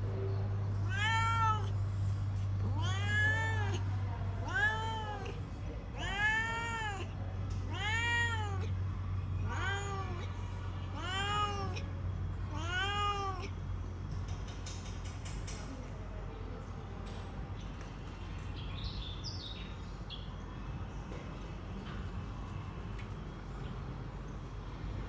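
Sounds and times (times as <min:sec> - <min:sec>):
cat meowing: 0:00.8 - 0:13.6.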